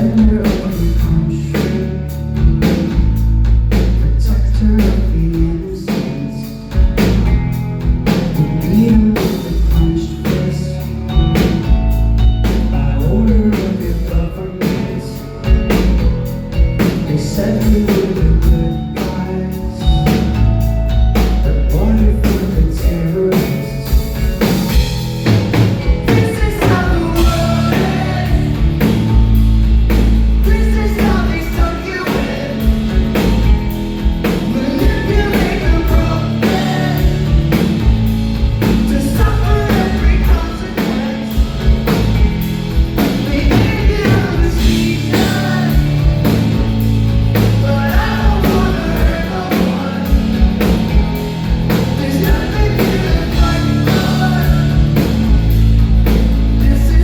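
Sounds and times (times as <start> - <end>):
distorted electric guitars: 0.0 - 57.0
drum kit beat: 0.0 - 57.0
heavy bass: 0.0 - 57.0.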